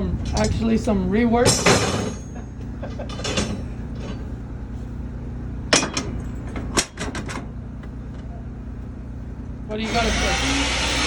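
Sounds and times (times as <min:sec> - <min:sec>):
steady low hum: 0:00.0 - 0:11.0
rebar clanking against bender: 0:05.7 - 0:07.4.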